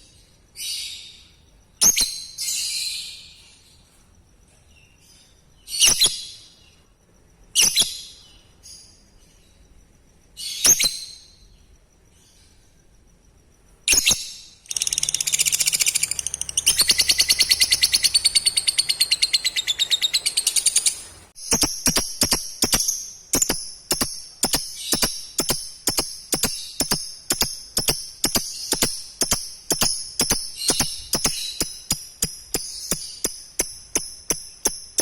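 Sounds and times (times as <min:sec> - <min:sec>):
lovebird chirping and trilling: 0:01.8 - 0:03.4, 0:05.6 - 0:06.6, 0:07.6 - 0:08.9, 0:10.4 - 0:11.5, 0:13.9 - 0:35.0.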